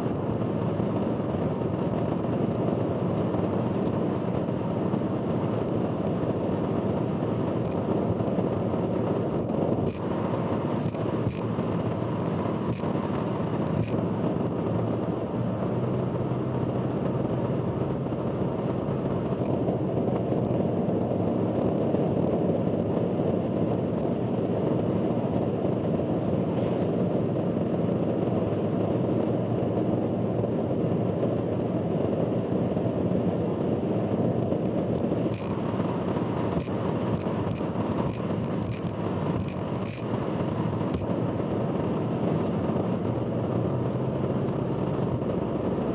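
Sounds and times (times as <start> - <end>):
car road noise: 0.0 - 24.4, 32.0 - 45.9
sharp clicks or rattles: 35.3 - 35.6, 36.6 - 40.0.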